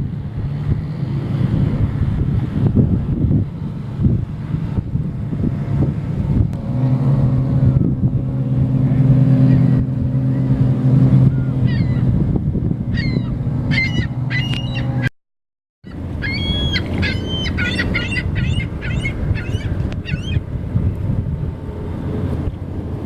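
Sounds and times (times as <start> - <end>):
waves lapping: 0.0 - 15.0, 15.9 - 23.0
low motor hum: 0.0 - 15.1, 15.9 - 23.0
wind buffeting microphone: 0.0 - 15.1, 15.9 - 23.0
birds honking: 12.9 - 15.1, 15.9 - 20.4.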